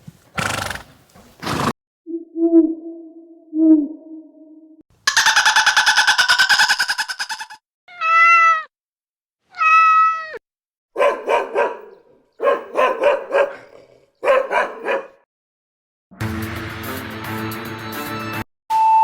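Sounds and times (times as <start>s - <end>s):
cat meows: 7.9s - 8.7s, 9.5s - 10.4s.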